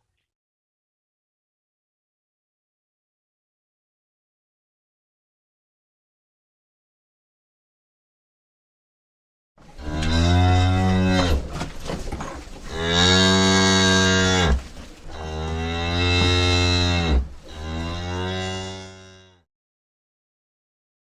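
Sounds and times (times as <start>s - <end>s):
cow mooing: 9.8s - 11.6s, 12.7s - 19.4s.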